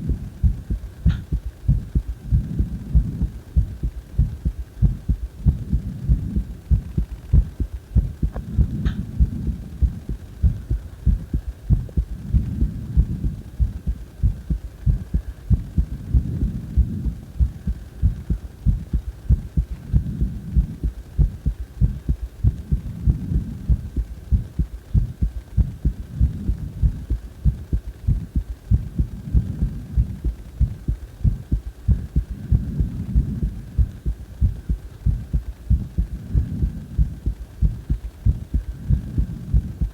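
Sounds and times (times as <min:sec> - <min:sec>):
heartbeat thuds: 0:00.0 - 0:39.9
low rumble: 0:00.0 - 0:39.9.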